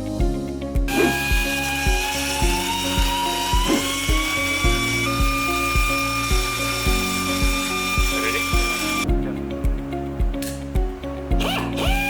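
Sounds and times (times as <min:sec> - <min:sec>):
background music with beat: 0:00.0 - 0:12.0
air belt sander whining: 0:00.9 - 0:09.1.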